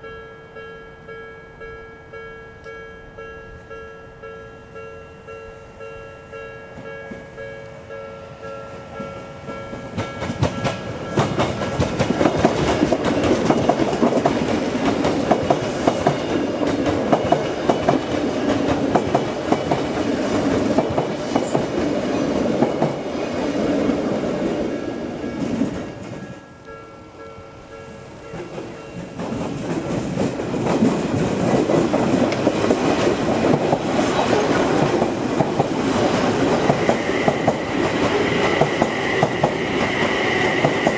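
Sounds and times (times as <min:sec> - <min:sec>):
level-crossing bell electronic tone: 0:00.0 - 0:11.4
train wheels clacking over rail joints: 0:09.7 - 0:24.4, 0:28.3 - 0:40.9.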